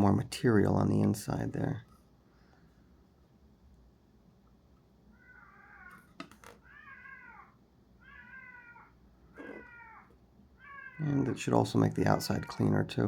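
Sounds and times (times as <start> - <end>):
cat meowing: 5.2 - 11.4.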